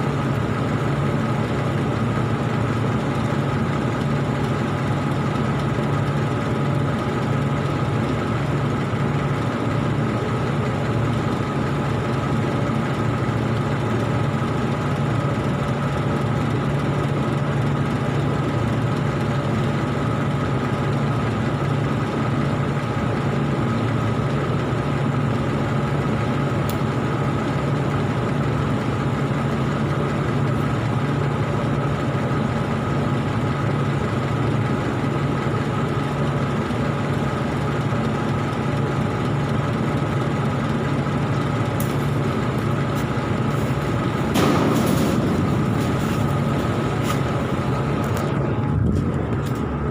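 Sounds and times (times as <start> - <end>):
welding equipment hum with hiss: 41.0 - 49.9.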